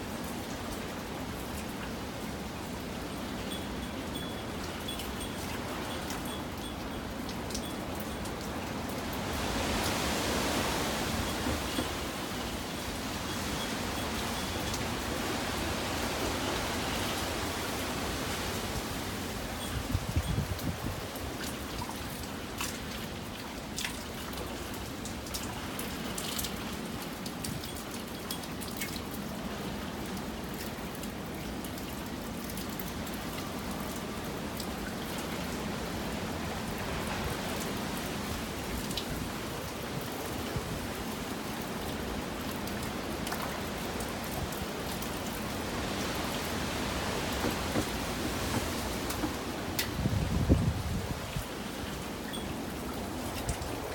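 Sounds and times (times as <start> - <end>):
heavy rain falling: 4.5 - 22.6, 29.1 - 53.9.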